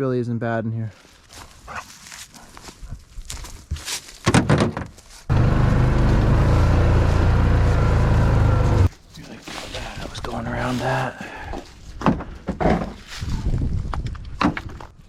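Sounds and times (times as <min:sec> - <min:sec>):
mower engine drone: 0:05.3 - 0:08.9.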